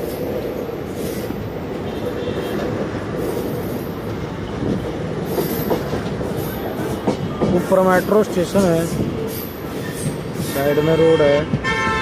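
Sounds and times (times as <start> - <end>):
train running from inside coach: 0.0 - 12.0.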